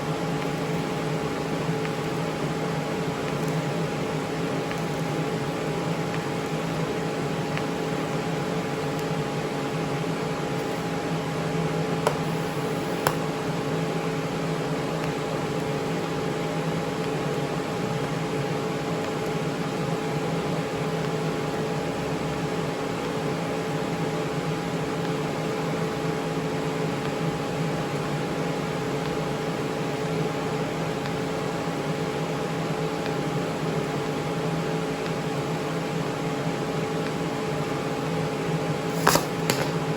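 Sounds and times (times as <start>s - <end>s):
fan-like hiss: 6.7s - 15.4s, 38.7s - 39.9s
welding machine humming: 10.5s - 13.4s, 38.9s - 39.9s.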